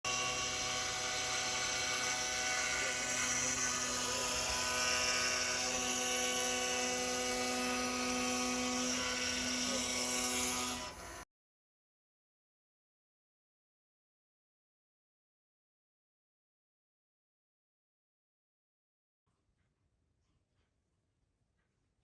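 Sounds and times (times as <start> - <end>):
motors steady tones: 0.1 - 11.2
router spindle whining cutting wood: 0.1 - 11.2.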